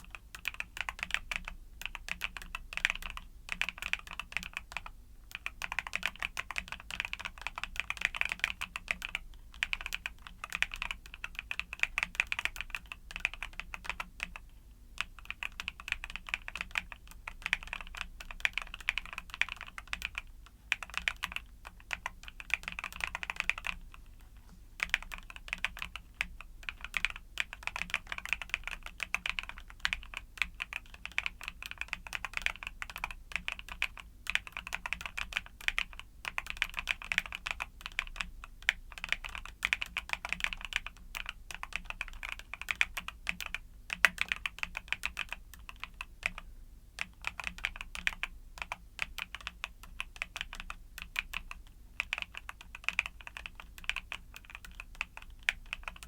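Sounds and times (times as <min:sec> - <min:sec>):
mechanical keyboard typing: 0:00.0 - 0:24.1, 0:24.8 - 0:56.0.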